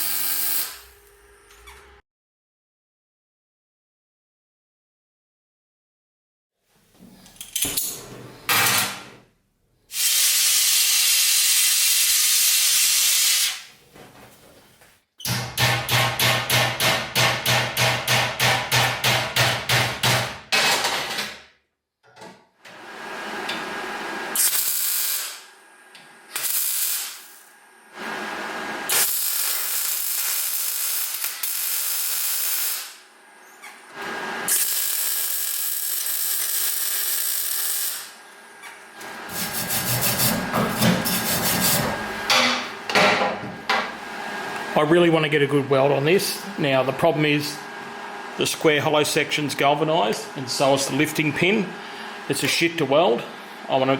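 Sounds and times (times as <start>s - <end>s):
power tool hissing: 0.0s - 0.9s, 26.3s - 33.0s, 39.3s - 42.3s.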